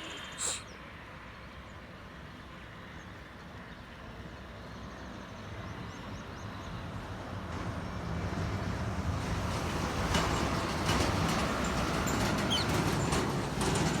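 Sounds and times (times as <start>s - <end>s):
faint bird chirps: 0.0s - 0.8s
motor vehicle rumbling past: 8.4s - 14.0s.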